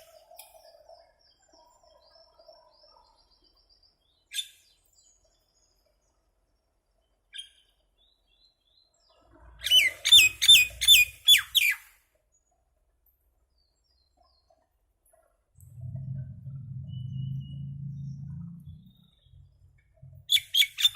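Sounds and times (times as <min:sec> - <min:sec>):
myna bird whistled calls: 0:09.6 - 0:11.9, 0:20.3 - 0:20.9
low hum: 0:15.5 - 0:20.9.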